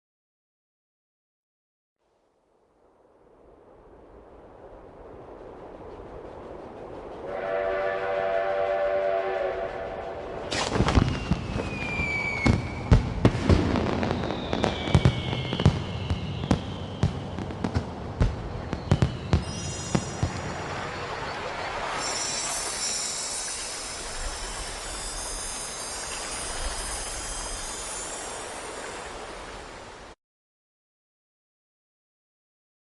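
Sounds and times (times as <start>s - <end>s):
steam train whistle: 7.2s - 10.6s
falling firework whistles: 7.3s - 29.8s
fireworks bangs: 10.4s - 28.2s
fireworks crackle: 10.5s - 29.8s.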